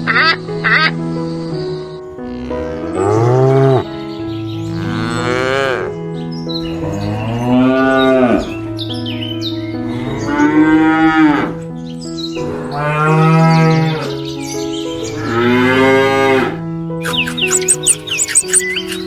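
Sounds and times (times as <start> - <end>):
background music: 0.0 - 19.0
cow mooing: 2.2 - 3.9, 4.7 - 5.9, 6.6 - 8.8, 9.8 - 11.6, 17.0 - 19.0.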